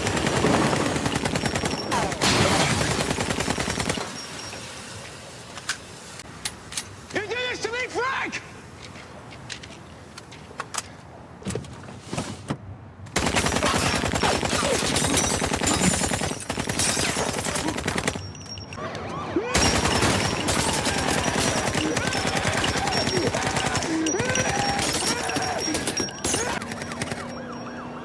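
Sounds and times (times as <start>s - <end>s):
automatic gunfire: 0.0s - 4.0s, 13.2s - 18.2s, 19.6s - 27.3s.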